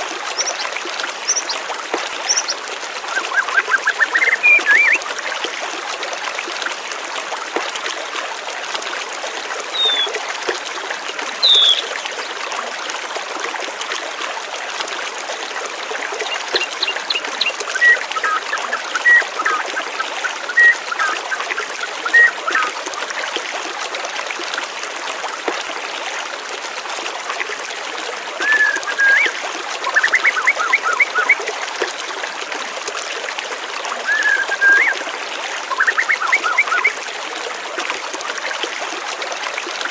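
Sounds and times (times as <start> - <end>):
trickle of flowing water: 0.0 - 39.9
birds chirping: 0.4 - 0.6, 1.3 - 1.6, 2.3 - 5.0, 9.8 - 10.1, 11.4 - 12.0, 35.7 - 36.9.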